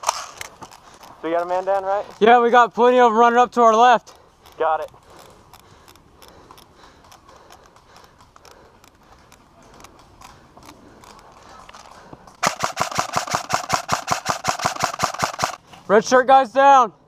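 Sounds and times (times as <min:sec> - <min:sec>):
faint clicks: 0:04.1 - 0:12.3
airsoft gun firing full auto: 0:12.4 - 0:15.6.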